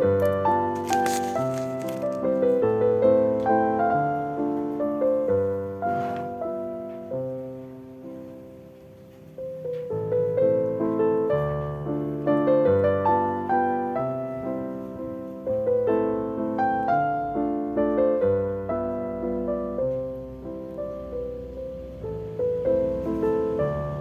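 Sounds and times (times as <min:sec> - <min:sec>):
gentle solo piano melody: 0:00.0 - 0:24.0.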